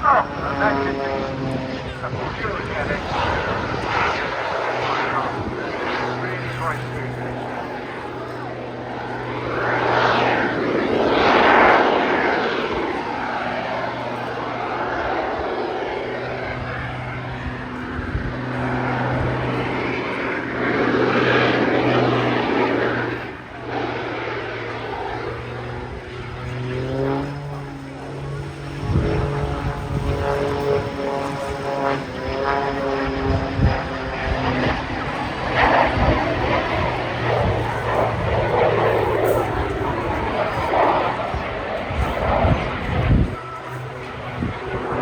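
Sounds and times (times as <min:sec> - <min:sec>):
propeller aircraft engine: 0:00.0 - 0:45.0
steady low hum: 0:00.0 - 0:45.0.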